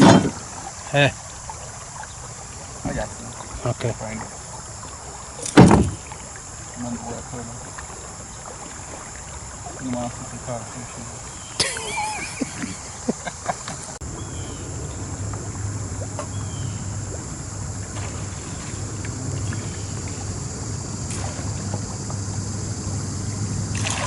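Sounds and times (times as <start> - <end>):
boat motor hum: 0.0 - 24.0
water and wind noise: 0.0 - 24.0
faint bird chirps: 10.8 - 13.0, 14.2 - 14.7, 16.2 - 16.9.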